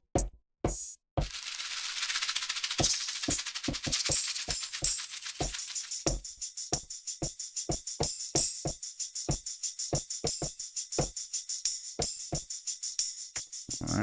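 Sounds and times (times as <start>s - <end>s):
hip-hop kick drum pattern: 0.2s - 1.4s
tambourine-like jingle: 1.3s - 14.0s.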